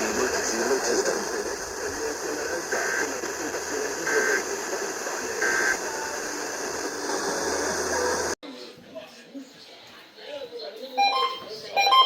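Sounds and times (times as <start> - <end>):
radio noise hiss: 0.0 - 8.4.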